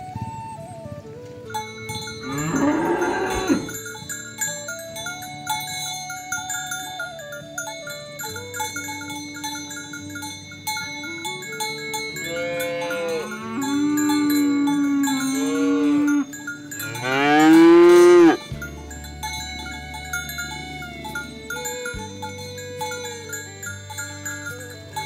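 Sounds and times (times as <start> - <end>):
cow mooing: 2.2 - 3.8, 12.1 - 18.5.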